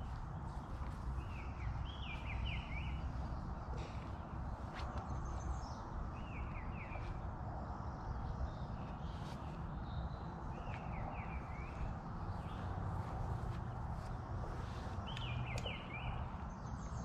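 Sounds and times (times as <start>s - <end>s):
low outdoor rumble: 0.0s - 17.0s
songbird calling: 14.6s - 17.0s.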